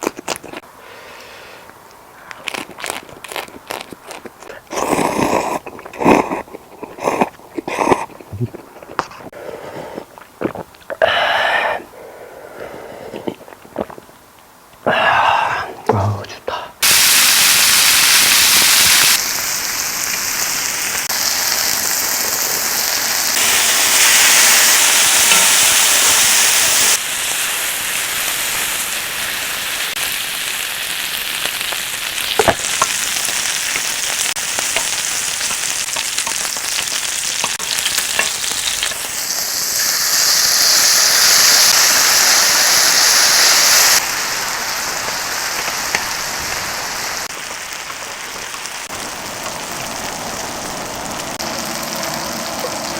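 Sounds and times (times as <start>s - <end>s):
pork sizzling on a grill pan: 16.8s - 52.9s.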